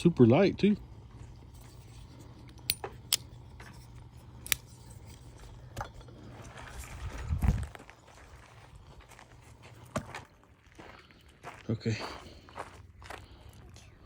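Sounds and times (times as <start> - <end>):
folding knife blade clicks: 4.4 - 4.6.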